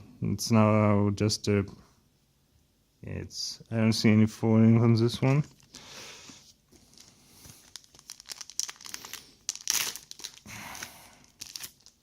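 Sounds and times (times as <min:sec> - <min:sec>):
foil wrapper crinkling: 0:06.8 - 0:12.0.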